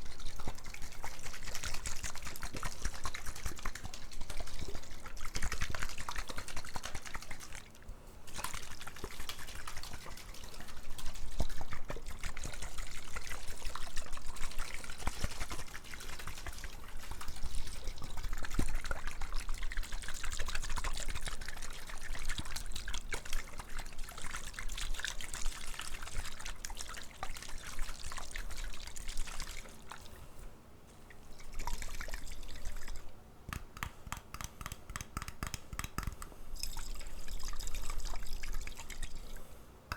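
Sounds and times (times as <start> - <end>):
water pouring and trickling: 0.0 - 7.7, 8.3 - 30.3, 31.1 - 33.1, 36.6 - 39.4
water dripping: 31.1 - 39.4.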